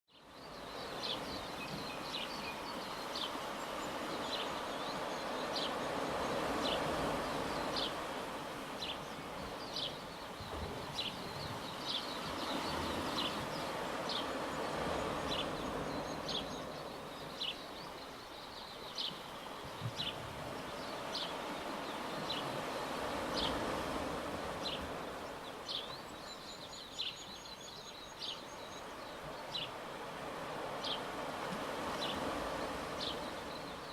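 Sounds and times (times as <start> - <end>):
small sea waves washing: 28.8 - 33.9.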